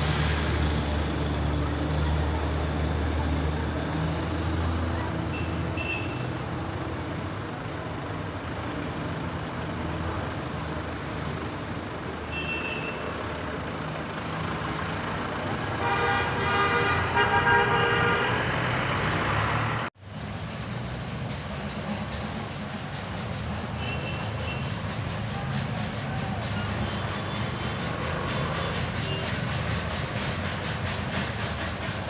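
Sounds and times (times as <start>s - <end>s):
diesel locomotive engine running: 0.0s - 32.0s
locomotive horn blasts: 15.8s - 18.7s.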